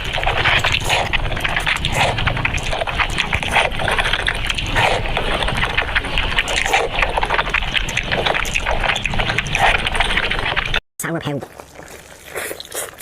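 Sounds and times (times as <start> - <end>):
wet chewing and lip-smacking: 0.0 - 13.0.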